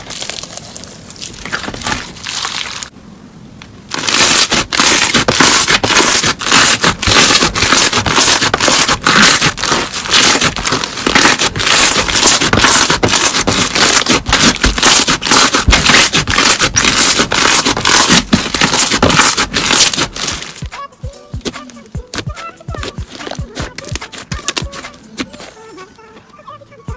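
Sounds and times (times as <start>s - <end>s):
slime crackling and crunching: 0.0s - 2.9s, 3.9s - 20.6s.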